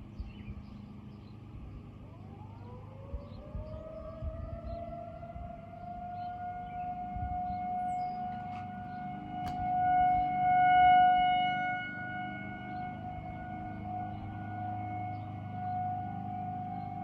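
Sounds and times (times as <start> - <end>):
distant warning siren: 0.0 - 17.0
faint lower-pitched siren: 0.0 - 17.0.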